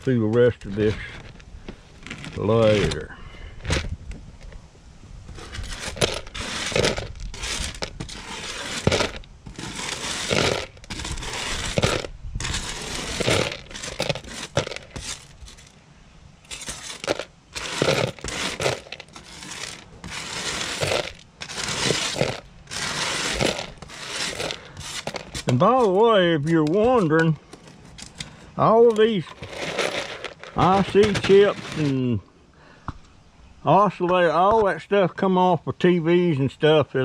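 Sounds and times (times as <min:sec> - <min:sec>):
scraping and clinking of scrap parts: 0:29.2 - 0:32.0.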